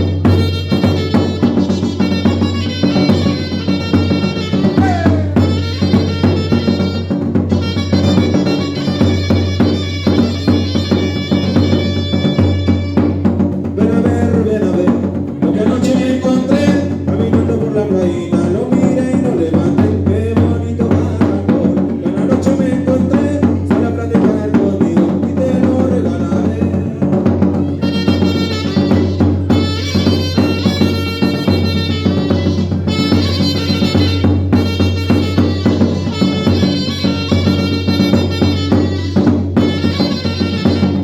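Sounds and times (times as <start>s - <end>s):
band playing: 0.0s - 41.0s
drums keeping a steady beat: 0.0s - 41.0s.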